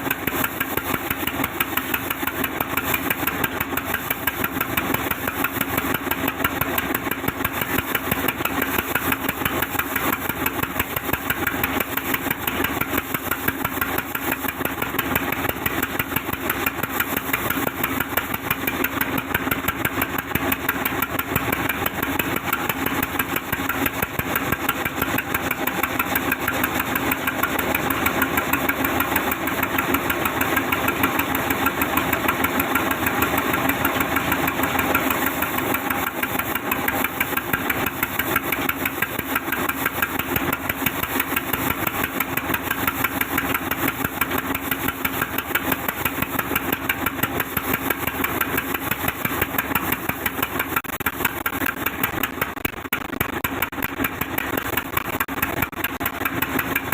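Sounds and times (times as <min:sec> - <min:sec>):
sawmill machinery droning: 0:00.0 - 0:56.9.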